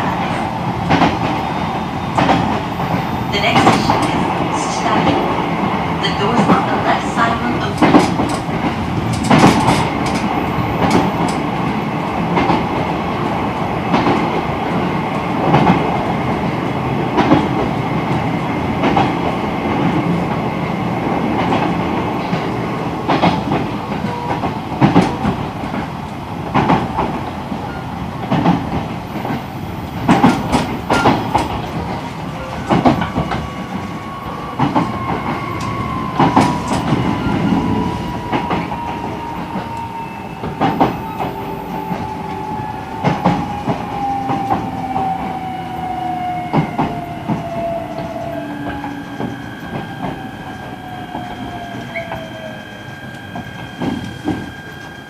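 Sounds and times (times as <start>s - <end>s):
train wheels on track: 0.0s - 55.0s
clacks over rail joints: 6.2s - 11.5s, 21.3s - 37.6s.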